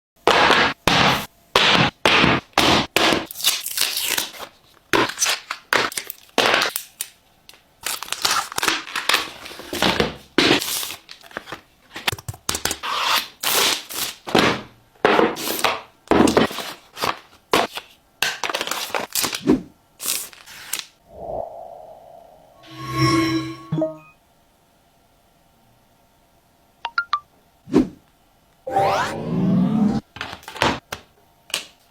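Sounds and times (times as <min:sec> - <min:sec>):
packaging tearing and crinkling: 0:07.8 - 0:09.6.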